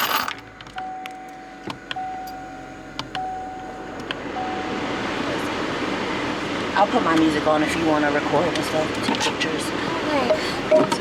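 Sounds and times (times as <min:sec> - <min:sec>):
car warning chime beeping: 0:00.8 - 0:05.0, 0:10.2 - 0:11.0.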